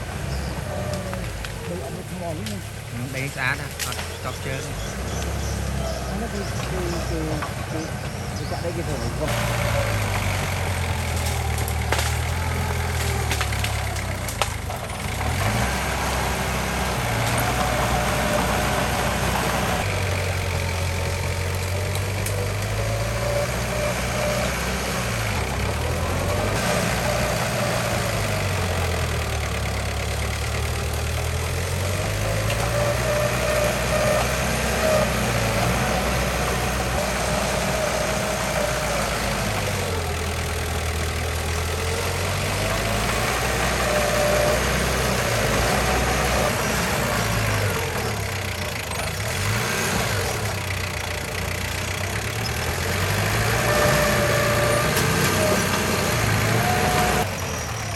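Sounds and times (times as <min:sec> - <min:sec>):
bulldozer diesel engine running: 0:00.0 - 0:57.9.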